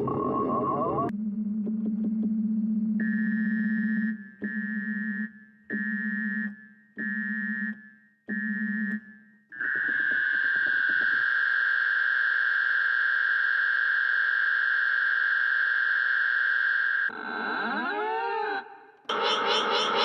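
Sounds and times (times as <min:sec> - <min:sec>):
rapidly warbling siren-like tone: 0:00.0 - 0:04.8, 0:09.6 - 0:20.0.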